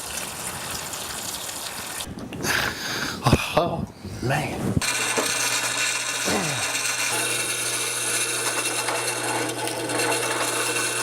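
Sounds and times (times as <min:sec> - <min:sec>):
drill press humming: 0:04.8 - 0:11.0.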